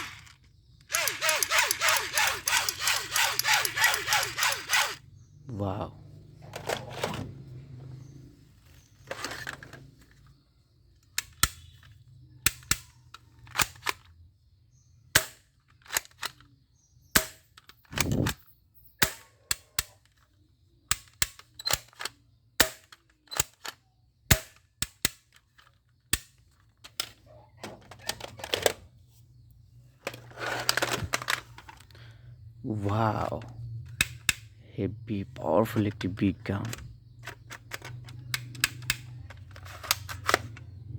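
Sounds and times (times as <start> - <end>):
plastic rattling: 0.0 - 5.0, 25.2 - 29.0, 30.0 - 32.1, 35.8 - 40.9
plastic toy gun clicking: 0.0 - 5.0, 11.0 - 14.1, 15.1 - 18.4, 20.9 - 27.2, 32.9 - 34.6, 35.8 - 40.8.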